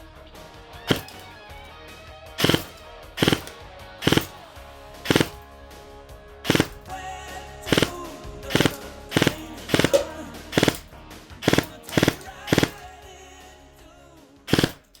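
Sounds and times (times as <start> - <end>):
background music: 0.0 - 15.0
airsoft gun firing bursts: 0.9 - 1.3, 2.4 - 5.4, 6.5 - 6.9, 7.7 - 13.0, 14.5 - 15.0.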